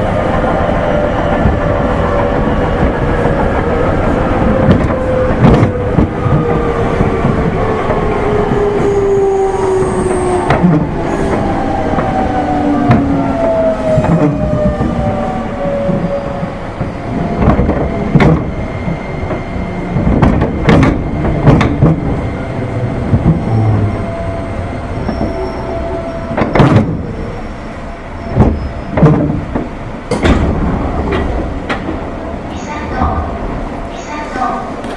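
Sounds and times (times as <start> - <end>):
train wheels rumbling: 0.0 - 34.9
clunks and knocks: 4.6 - 7.1, 14.0 - 15.0, 16.8 - 22.2, 23.1 - 23.5, 26.3 - 27.1, 28.3 - 32.1.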